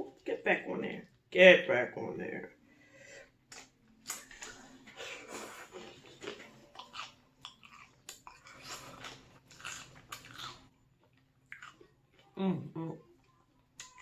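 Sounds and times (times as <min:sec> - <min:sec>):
chewing and crunching pork rinds: 0:03.5 - 0:12.4, 0:13.0 - 0:14.0.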